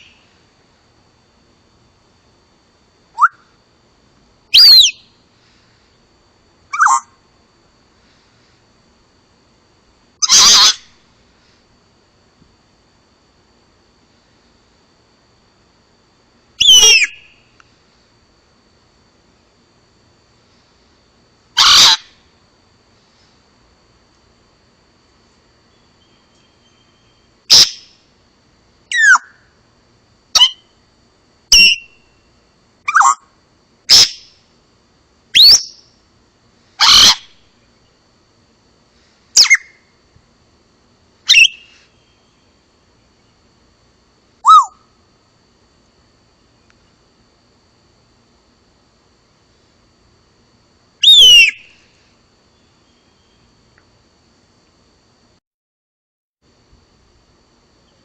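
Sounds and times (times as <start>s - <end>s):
parrot calling: 4.5s - 5.0s, 6.7s - 7.2s, 10.2s - 10.9s, 16.6s - 17.2s, 21.6s - 22.2s, 27.5s - 27.9s, 30.4s - 30.6s, 32.9s - 33.2s, 33.9s - 34.2s, 35.4s - 35.8s, 36.8s - 37.4s, 41.3s - 41.7s, 44.4s - 44.8s, 51.0s - 51.7s.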